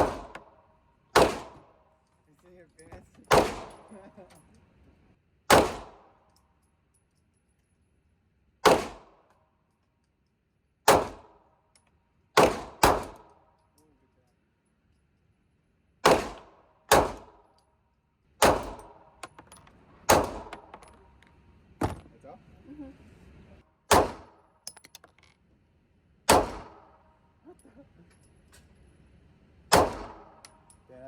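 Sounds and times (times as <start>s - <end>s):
pistol shots: 0.0s - 1.8s, 3.3s - 4.0s, 5.5s - 6.2s, 8.6s - 9.3s, 10.9s - 11.4s, 12.4s - 13.4s, 16.0s - 17.5s, 18.4s - 19.2s, 20.0s - 20.9s, 23.9s - 24.5s, 26.3s - 27.0s, 29.7s - 30.4s.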